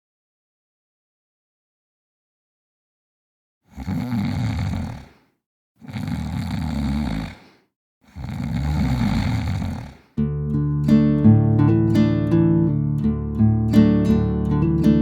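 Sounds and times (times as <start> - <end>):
person snoring: 3.7 - 5.2, 5.8 - 10.2
acoustic guitar music: 10.2 - 15.0.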